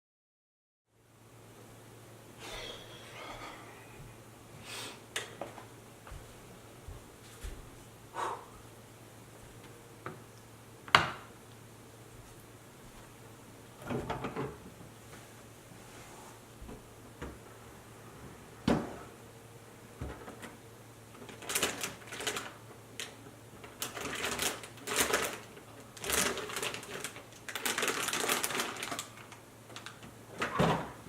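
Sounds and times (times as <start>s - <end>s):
plastic bag crinkling: 21.2s - 30.0s.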